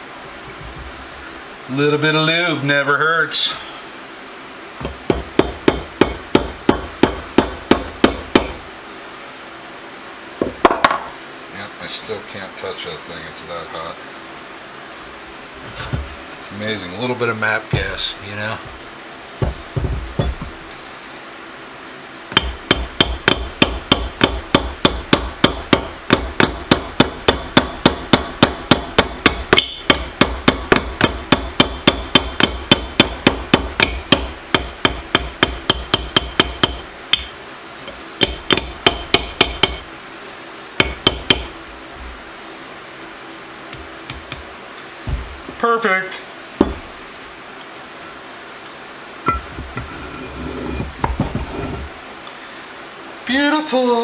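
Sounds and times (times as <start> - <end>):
hammer striking steel pin: 4.8 - 8.6, 19.4 - 20.6, 22.3 - 37.3, 38.2 - 39.9, 40.8 - 41.6, 49.3 - 51.7.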